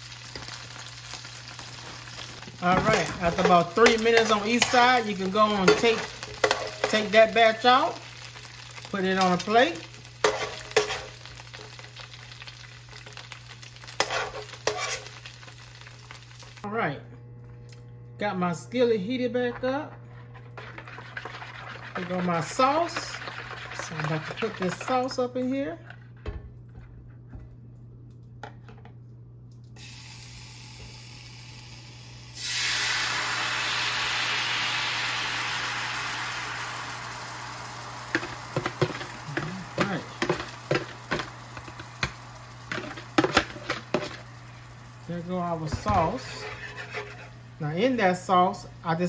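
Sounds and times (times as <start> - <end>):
beef sizzling in hot oil: 0.0 - 16.7, 29.8 - 47.6.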